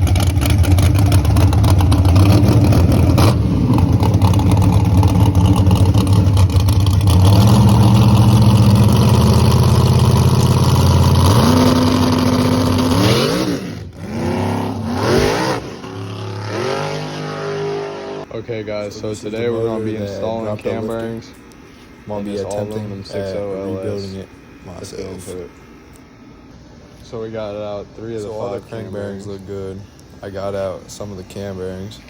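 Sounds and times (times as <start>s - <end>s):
truck engine running and revving: 0.0s - 18.3s.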